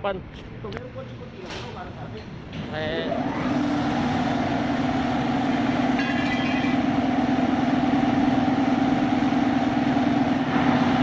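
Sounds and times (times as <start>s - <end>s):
wheel bearing humming: 2.5s - 11.0s.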